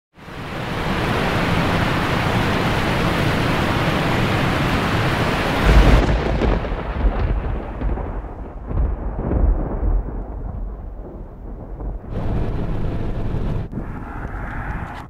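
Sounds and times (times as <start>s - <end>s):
heavy rain hissing: 0.2s - 8.3s
thunder rumbling: 0.5s - 15.0s.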